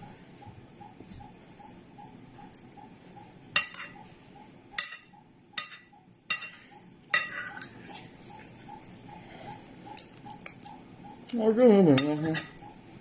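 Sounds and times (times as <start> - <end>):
cutlery clinking against a dish: 3.6 - 4.0, 4.8 - 7.8.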